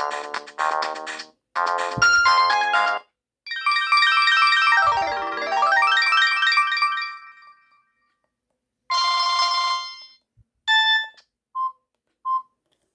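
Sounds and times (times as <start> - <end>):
mobile phone ringtone melody: 2.0 - 7.8.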